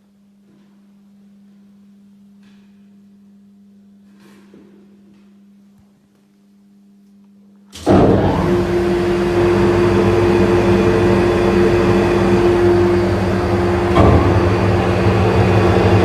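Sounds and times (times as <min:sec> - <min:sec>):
meat grinder running: 0:07.9 - 0:16.0.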